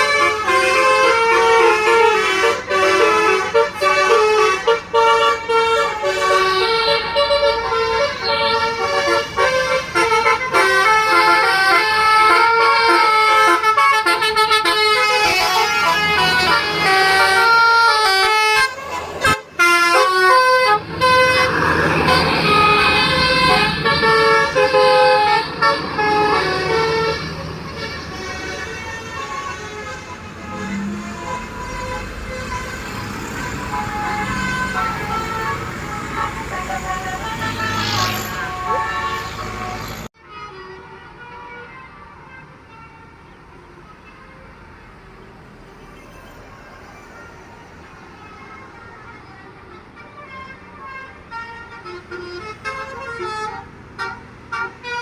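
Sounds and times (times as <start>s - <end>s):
musical air horn tune: 0.0s - 41.8s
bus engine and road noise: 0.0s - 55.0s.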